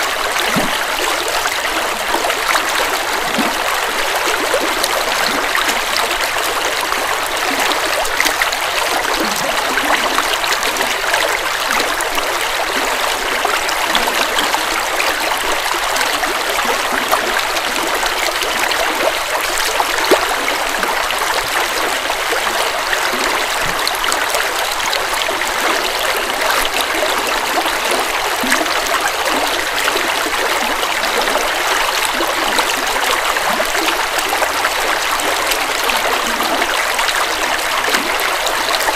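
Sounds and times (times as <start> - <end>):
river flowing over rocks: 0.0 - 38.9.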